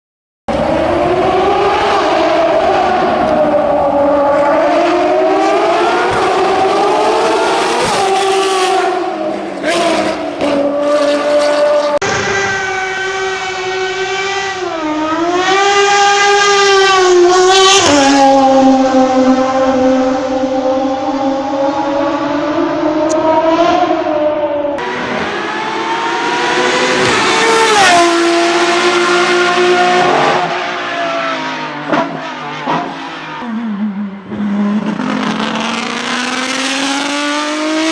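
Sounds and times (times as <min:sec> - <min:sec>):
racing car engine at high revs: 0:00.5 - 0:37.9.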